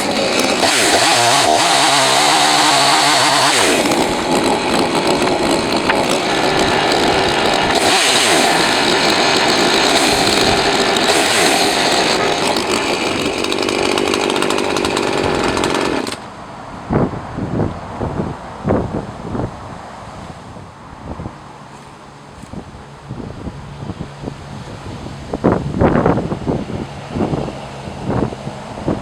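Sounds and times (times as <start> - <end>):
chainsaw running: 0.0 - 16.3.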